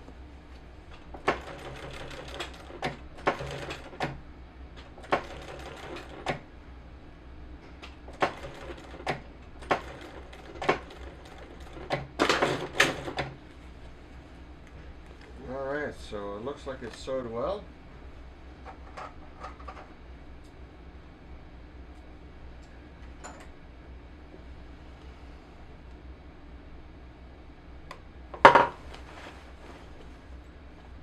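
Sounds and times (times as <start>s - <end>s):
sewing machine stitching: 1.2s - 4.2s, 5.0s - 6.4s, 8.1s - 13.4s.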